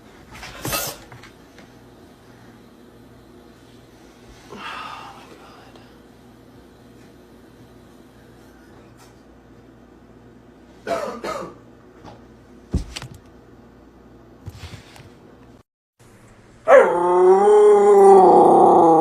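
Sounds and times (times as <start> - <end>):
dog howling: 16.7 - 19.0.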